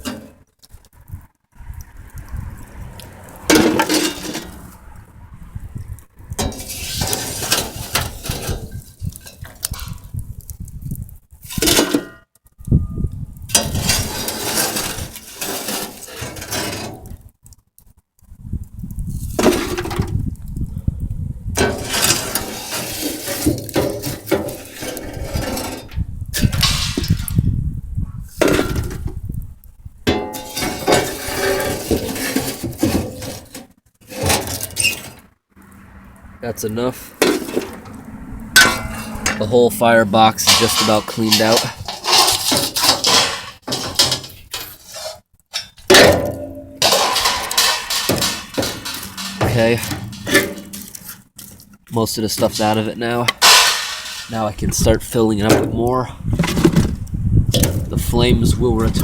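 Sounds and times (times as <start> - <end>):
metal shovel scraping stove: 0.0 - 0.5, 3.3 - 5.0, 6.2 - 10.2, 11.4 - 12.2, 13.4 - 17.3, 19.1 - 20.2, 21.6 - 29.4, 30.1 - 35.4, 36.5 - 59.0
ash dropped into metal pot: 38.6 - 39.5, 40.3 - 44.7, 45.6 - 51.0, 53.3 - 54.4.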